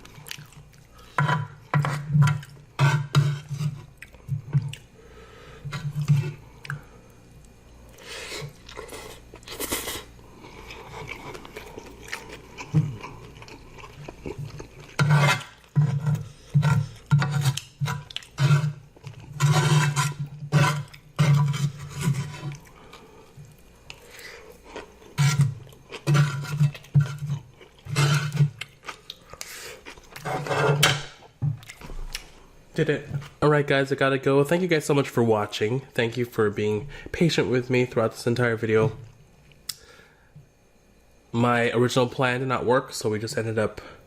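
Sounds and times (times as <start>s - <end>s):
person eating: 0.0s - 30.5s.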